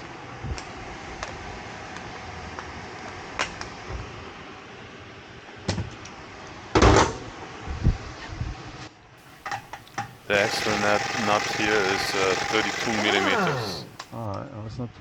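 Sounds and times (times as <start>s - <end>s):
sharp metallic clicks: 9.3s - 14.2s.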